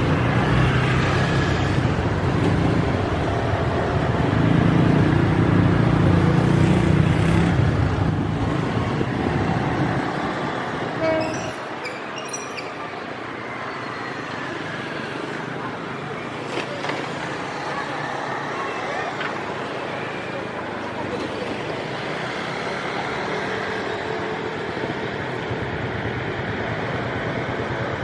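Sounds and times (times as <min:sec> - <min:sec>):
diesel train passing: 0:00.0 - 0:16.5, 0:17.2 - 0:28.0.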